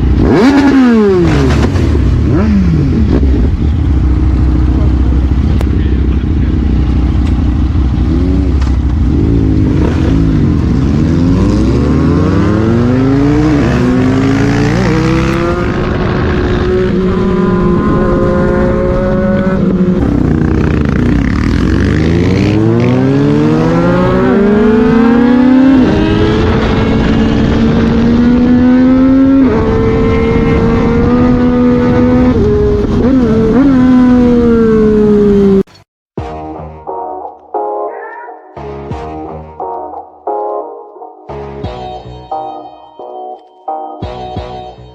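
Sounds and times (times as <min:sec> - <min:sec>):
motorcycle engine accelerating: 0:00.0 - 0:35.8.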